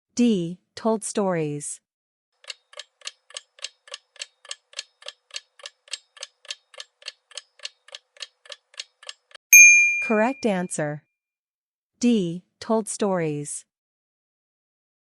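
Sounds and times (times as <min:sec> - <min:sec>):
clock-like ticking: 0:02.4 - 0:09.4.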